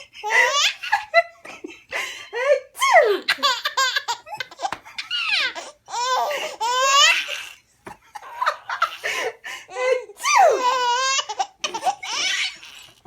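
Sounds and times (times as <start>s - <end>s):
baby laughing: 0.2s - 1.1s, 3.2s - 7.6s, 8.2s - 9.3s, 10.5s - 13.0s.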